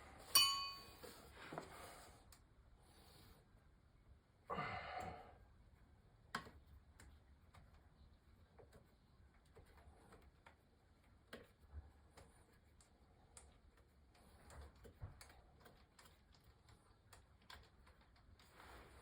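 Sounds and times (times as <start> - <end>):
faint clicks and taps: 6.2 - 18.6.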